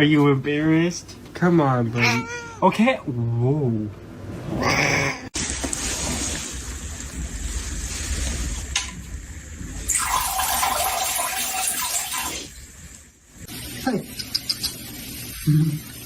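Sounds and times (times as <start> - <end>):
running water hissing: 9.8 - 16.0.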